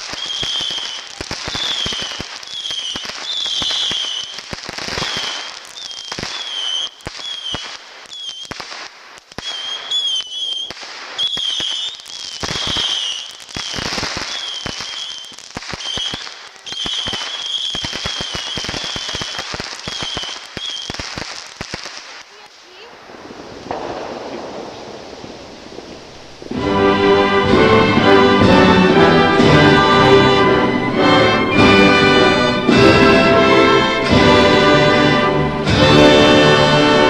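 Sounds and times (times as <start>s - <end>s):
warbling firework whistles: 0.0s - 21.8s
fireworks bangs and crackling: 0.0s - 37.0s.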